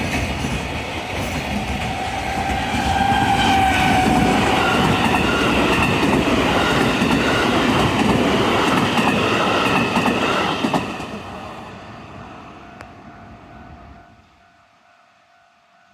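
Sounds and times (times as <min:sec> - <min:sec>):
train wheels clattering on rails: 0:00.0 - 0:11.3.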